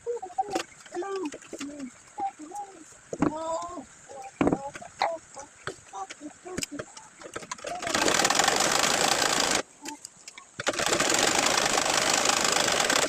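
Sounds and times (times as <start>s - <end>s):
sewing machine stitching: 7.3s - 9.6s, 10.6s - 13.0s.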